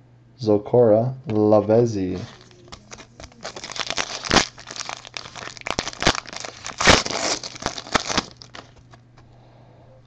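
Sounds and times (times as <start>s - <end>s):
plastic wrapper crinkling and tearing: 2.2s - 9.0s.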